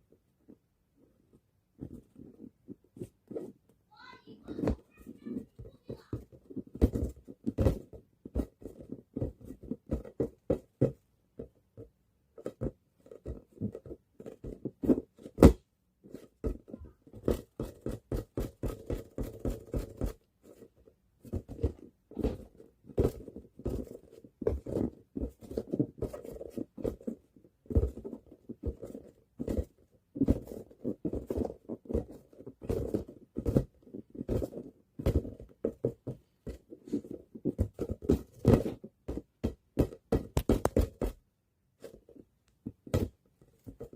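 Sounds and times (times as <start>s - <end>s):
ball bouncing on hard floor: 4.4s - 20.2s, 21.2s - 41.2s, 42.6s - 43.9s.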